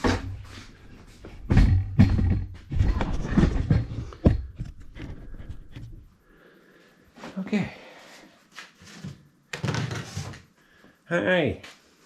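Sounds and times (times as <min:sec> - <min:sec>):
knocks and thumps: 0:00.0 - 0:06.1.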